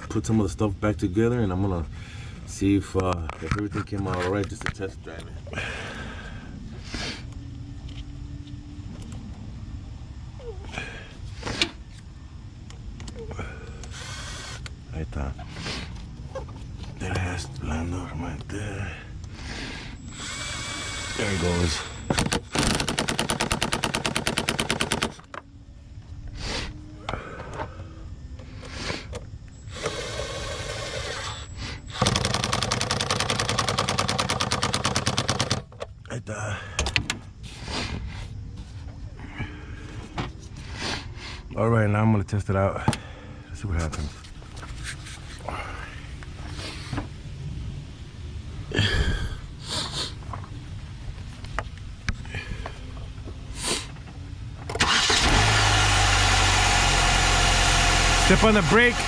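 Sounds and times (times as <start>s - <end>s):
power driver running: 20.1s - 25.4s, 29.7s - 35.7s, 54.7s - 59.0s
impact driver rattling: 22.1s - 25.3s, 32.0s - 35.7s
car engine starting and idling: 54.6s - 59.0s.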